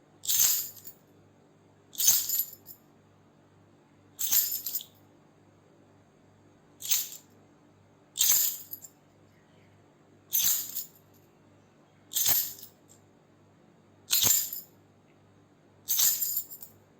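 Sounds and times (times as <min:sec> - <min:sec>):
faint steady hum: 0:00.0 - 0:16.9
keys jingling: 0:08.2 - 0:08.9, 0:10.4 - 0:10.9.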